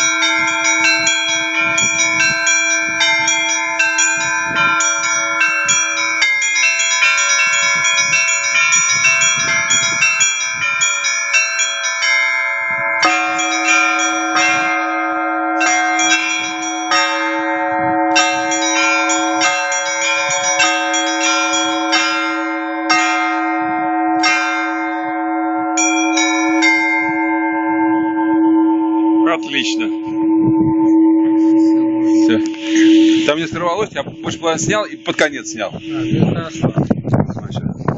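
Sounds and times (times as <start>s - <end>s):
small treble bells ringing: 0.0s - 27.9s
middle bells ringing: 0.0s - 37.1s
deep heavy bell: 0.0s - 37.9s.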